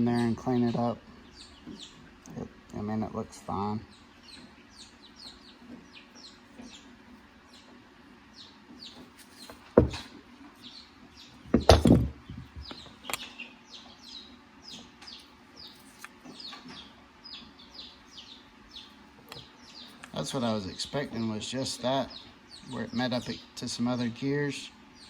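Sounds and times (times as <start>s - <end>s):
birds chirping: 0.0s - 25.0s
sharp knocks: 9.7s - 10.1s, 11.5s - 12.7s.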